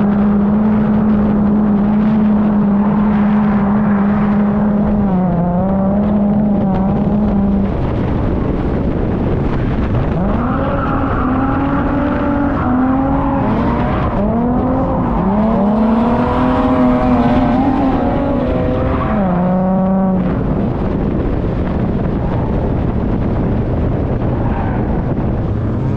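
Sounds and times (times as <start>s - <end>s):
car engine revving hard: 10.2s - 20.3s.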